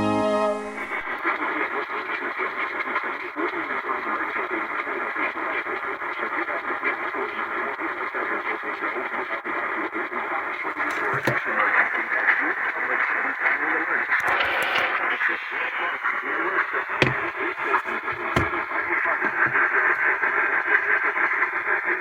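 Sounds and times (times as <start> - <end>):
radio static hiss: 10.3 - 20.0.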